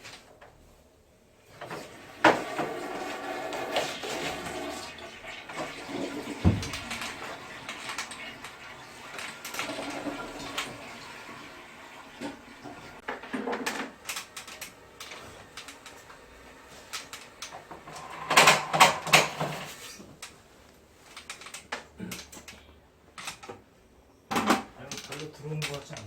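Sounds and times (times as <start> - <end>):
sharp thump: 6.4 - 6.8
handling clicks and knocks: 6.4 - 8.5, 13.0 - 16.1, 24.3 - 26.0.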